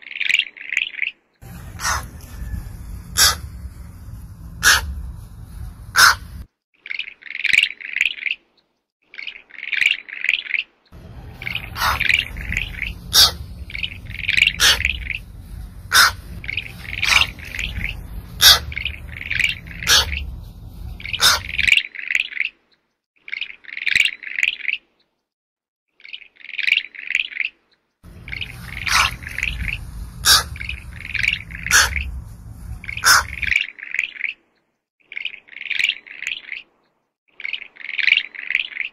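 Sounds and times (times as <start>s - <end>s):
low rumble: 1.4s - 6.5s, 11.0s - 21.7s, 28.1s - 33.6s
quick high chirping calls: 5.9s - 6.4s, 11.4s - 21.7s, 28.2s - 33.6s.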